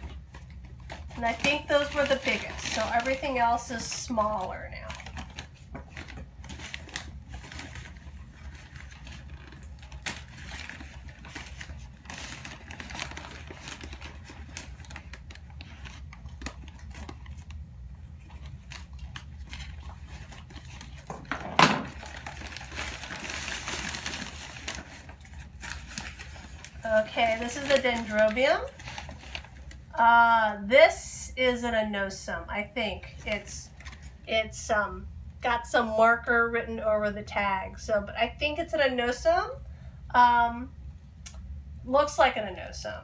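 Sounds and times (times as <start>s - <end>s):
packing material rustling: 0.0s - 30.0s.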